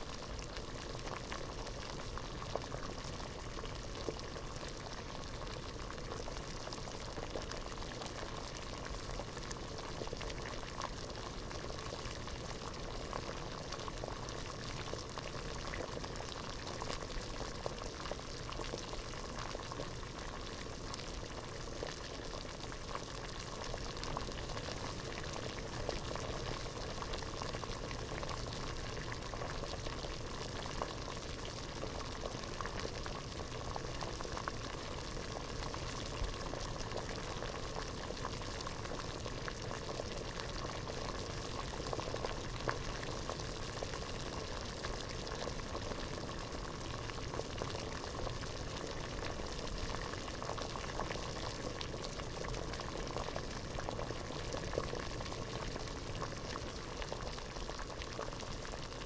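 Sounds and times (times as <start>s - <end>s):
water boiling in pot: 0.0s - 59.0s.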